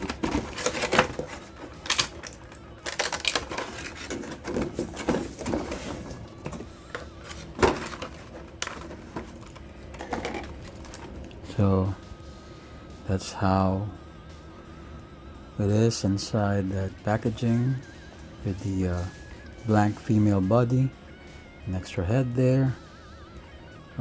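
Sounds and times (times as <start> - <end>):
packaging being handled: 0.0 - 11.3.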